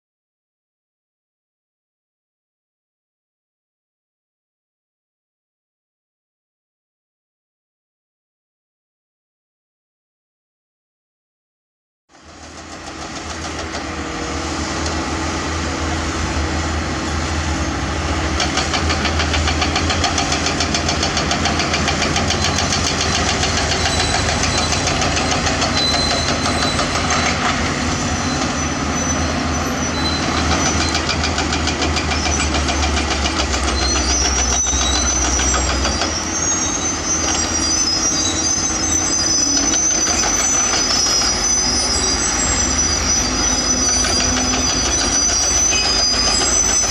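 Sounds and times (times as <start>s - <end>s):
diesel engine rumbling: 12.2s - 46.9s
high-pitched squealing: 17.2s - 46.9s.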